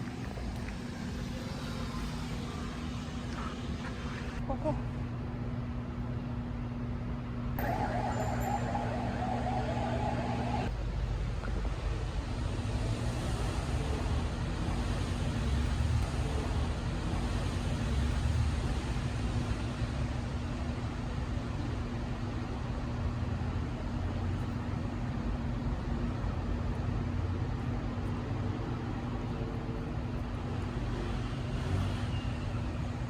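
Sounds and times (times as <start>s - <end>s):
street traffic rumble: 0.0s - 33.0s
steady low hum: 1.6s - 11.4s
higher hum: 7.6s - 10.7s.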